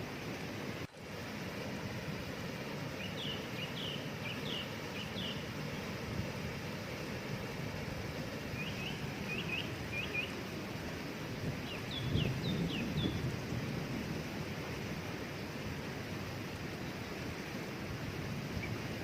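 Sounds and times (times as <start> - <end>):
waterfall rushing: 0.0 - 19.0
songbird chirping: 3.0 - 6.0, 8.5 - 10.5, 11.6 - 13.7.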